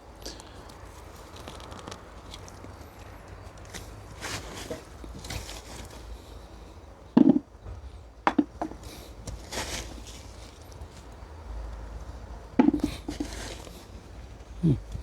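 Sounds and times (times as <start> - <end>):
rustling scrapes of earth: 0.9 - 6.5, 8.7 - 11.4, 12.7 - 14.6
dull knocks: 7.2 - 8.8, 12.6 - 13.3.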